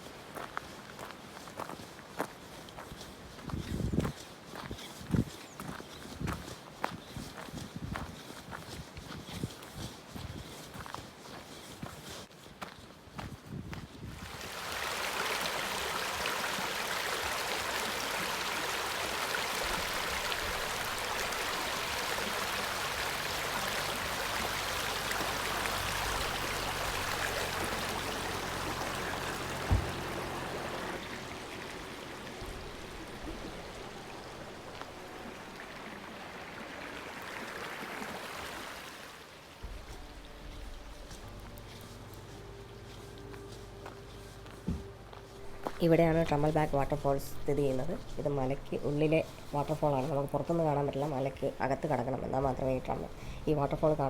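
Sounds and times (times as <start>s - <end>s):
rushing mountain stream: 0.0s - 12.2s, 14.1s - 44.8s.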